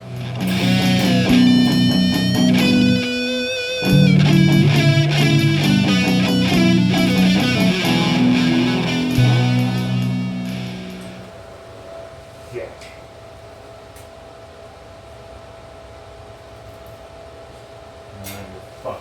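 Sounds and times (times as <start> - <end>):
bass guitar: 0.0 - 11.3
electric guitar chords: 0.0 - 11.8.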